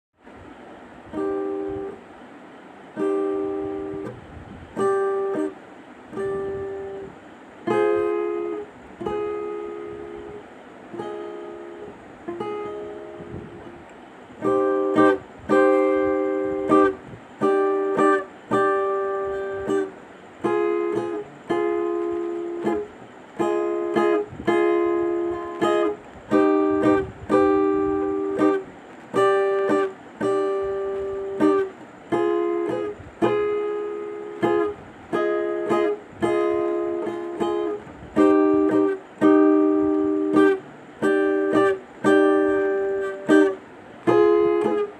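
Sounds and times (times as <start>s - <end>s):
plucked string chords: 3.0s - 44.9s.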